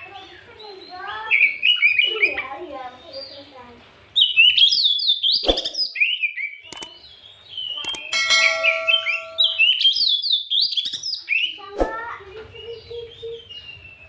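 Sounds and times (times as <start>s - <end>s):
bird singing whistled phrases: 1.3s - 2.4s, 4.2s - 6.9s.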